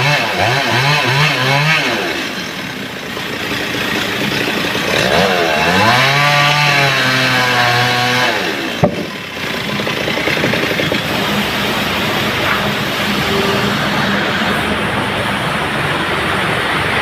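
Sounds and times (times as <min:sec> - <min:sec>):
chainsaw engine revving: 0:00.0 - 0:15.0
sharp knock: 0:08.8 - 0:09.2.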